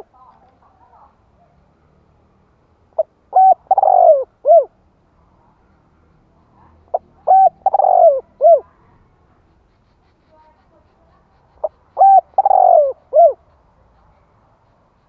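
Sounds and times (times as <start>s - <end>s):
dove cooing: 3.0s - 4.8s, 6.9s - 8.8s, 9.6s - 13.7s.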